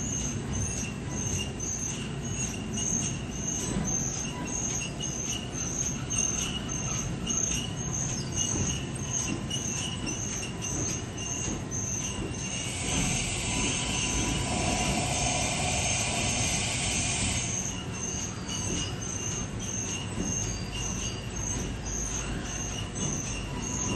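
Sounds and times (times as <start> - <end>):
loud hiss: 12.4 - 17.9
high-pitched squealing tones: 12.4 - 18.7.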